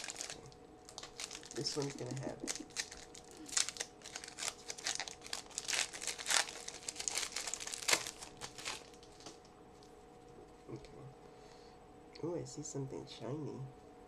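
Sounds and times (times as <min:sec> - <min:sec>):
wrapper tearing and crinkling: 0:00.0 - 0:09.4.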